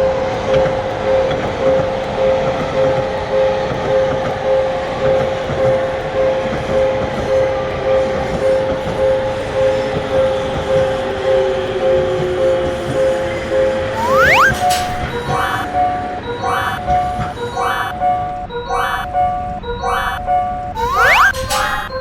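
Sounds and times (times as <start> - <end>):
two-tone crossing warning bell: 0.0 - 22.0.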